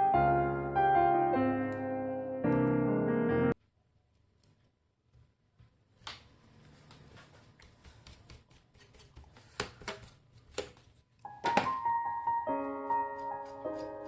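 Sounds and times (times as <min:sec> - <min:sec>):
background keyboard music: 0:00.0 - 0:03.6, 0:11.2 - 0:14.0.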